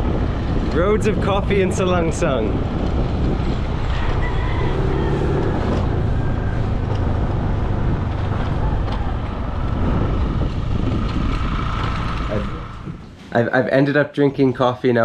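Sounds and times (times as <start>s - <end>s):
road rumble: 0.0s - 13.8s
motor scooter engine: 2.7s - 13.2s.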